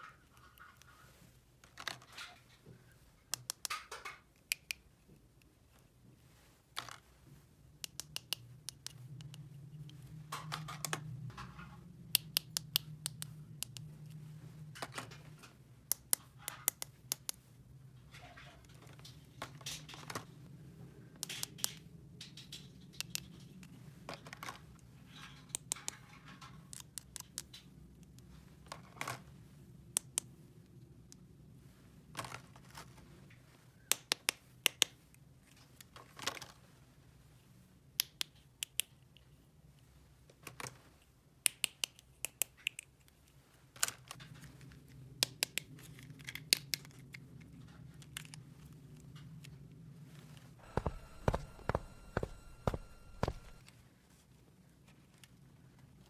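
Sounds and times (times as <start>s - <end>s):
plastic toy parts clicking: 7.8s - 9.0s
packaging rustling: 50.6s - 53.6s
low steady hum: 50.6s - 53.7s.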